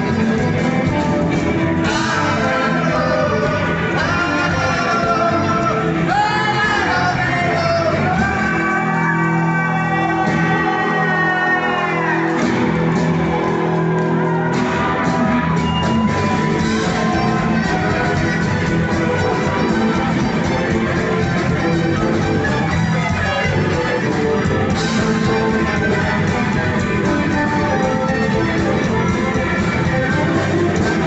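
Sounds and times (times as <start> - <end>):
live rock band music: 0.0 - 31.0
person singing and shouting: 1.8 - 12.4.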